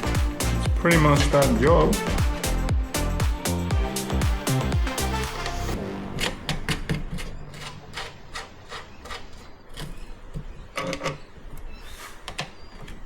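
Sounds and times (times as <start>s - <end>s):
hand tools and metal parts clicking: 6.2s - 13.0s.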